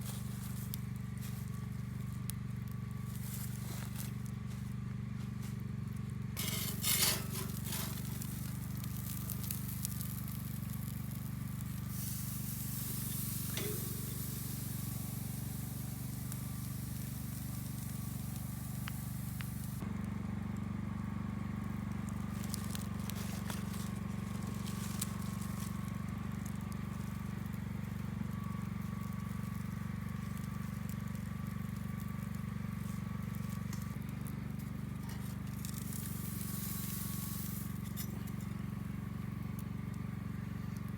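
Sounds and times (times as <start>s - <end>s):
campfire crackling: 0.0s - 40.9s
low hum: 6.4s - 20.2s.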